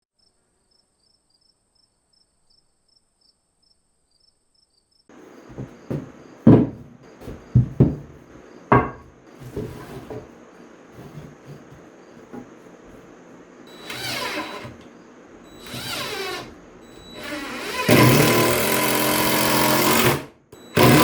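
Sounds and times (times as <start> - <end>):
sharp knocks and thuds: 5.5 - 10.3.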